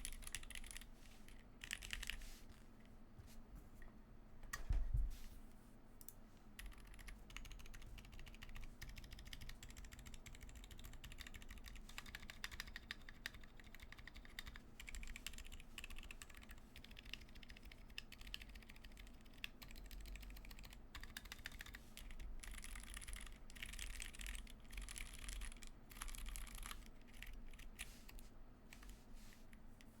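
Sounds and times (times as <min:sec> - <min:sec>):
quiet keyboard keystroke clicks: 0:06.0 - 0:27.7.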